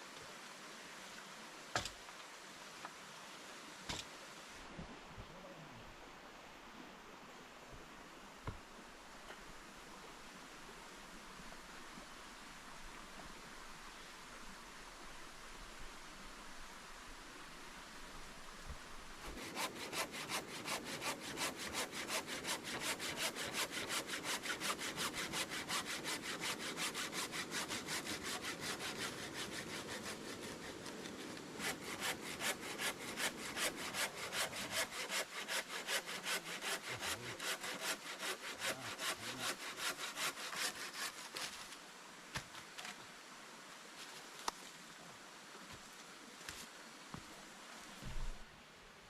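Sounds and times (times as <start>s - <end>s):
hand saw cutting wood: 19.2s - 41.6s.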